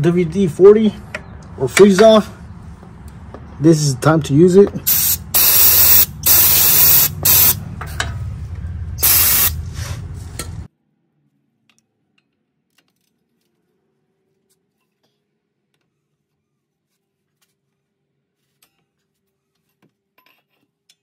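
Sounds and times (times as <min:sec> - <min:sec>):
aerosol spray hissing: 0:04.9 - 0:07.6, 0:09.0 - 0:09.6.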